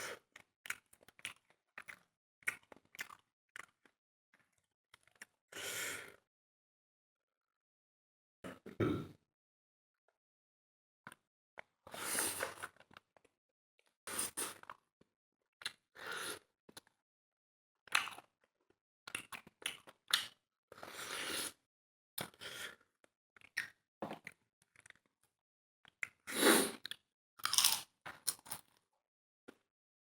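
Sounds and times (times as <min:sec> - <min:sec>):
chewing and crunching: 0:00.4 - 0:05.3, 0:17.9 - 0:18.3, 0:19.1 - 0:20.4, 0:23.4 - 0:25.1, 0:26.8 - 0:28.8.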